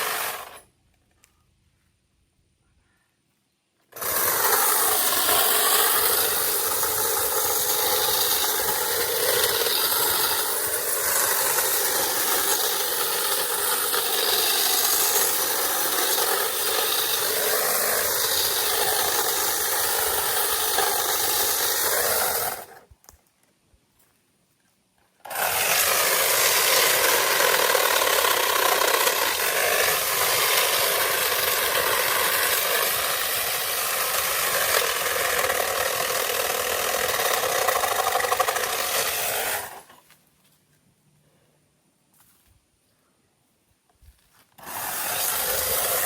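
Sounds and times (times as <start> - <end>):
power tool cutting branches: 0.0 - 0.7, 3.9 - 22.9, 25.2 - 40.1, 44.5 - 46.0.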